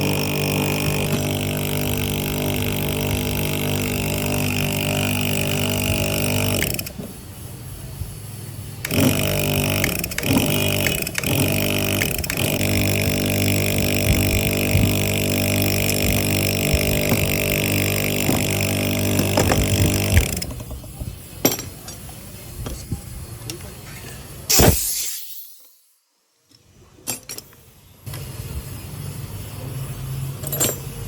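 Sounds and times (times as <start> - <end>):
machine motor humming: 0.0 - 7.1, 8.8 - 20.7.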